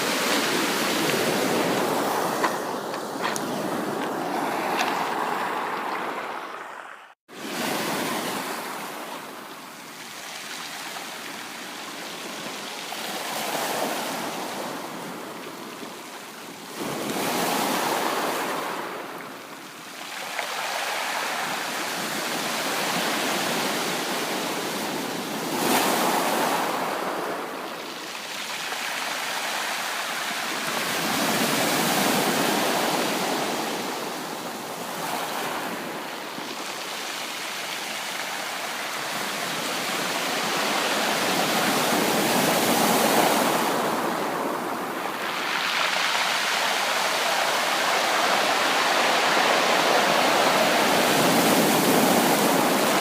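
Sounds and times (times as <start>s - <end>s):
sea waves breaking: 0.0s - 9.4s, 19.9s - 53.0s.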